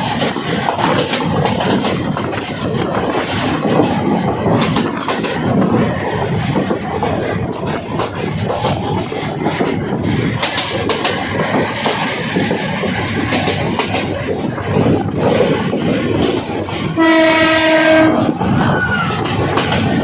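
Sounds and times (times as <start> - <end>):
train wheels clattering on track: 0.0 - 20.0
train horn blast: 17.0 - 18.4.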